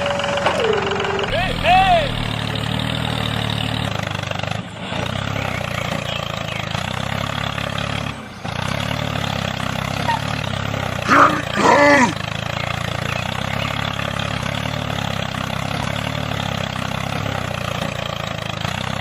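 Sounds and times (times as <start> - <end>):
tractor engine idling: 0.0 - 19.0
man shouting: 1.3 - 2.5, 11.1 - 12.2.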